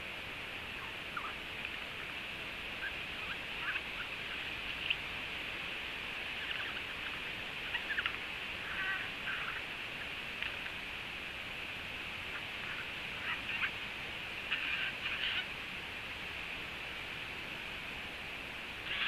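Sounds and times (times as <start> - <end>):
steady high hiss: 0.0 - 19.0
short bird calls: 6.4 - 9.7, 14.5 - 15.5.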